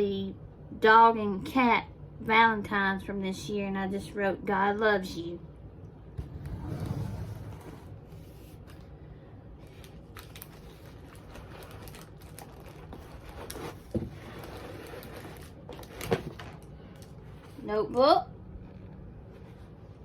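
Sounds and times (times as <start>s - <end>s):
faint crinkling: 6.5s - 20.0s.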